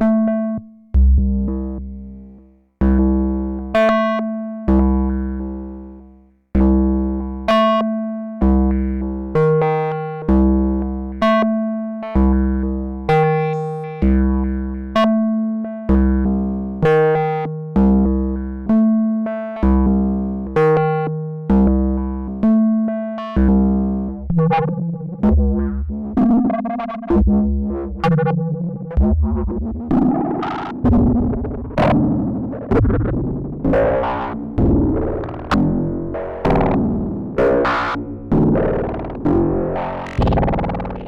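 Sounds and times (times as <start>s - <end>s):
plucked synthesizer notes: 0.0s - 41.0s
deep synth bass: 1.0s - 3.8s, 6.6s - 7.6s, 12.1s - 15.0s, 15.9s - 18.8s, 23.4s - 41.0s.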